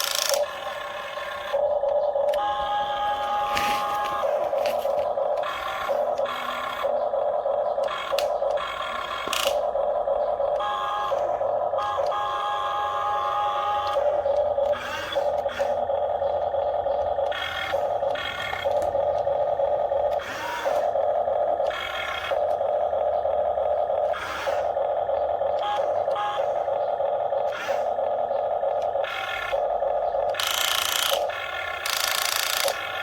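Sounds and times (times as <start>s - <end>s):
toy excavator motors whining: 0.0s - 33.0s.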